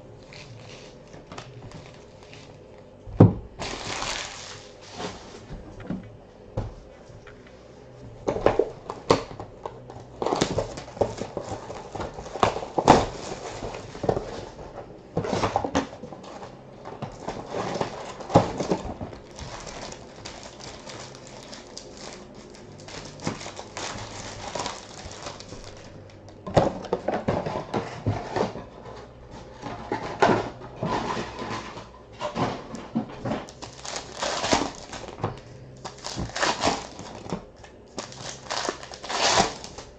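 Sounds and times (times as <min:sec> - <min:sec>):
foil wrapper ripping and crinkling: 0:03.6 - 0:05.1, 0:10.1 - 0:14.3, 0:17.2 - 0:26.1, 0:33.4 - 0:35.2, 0:35.8 - 0:39.9.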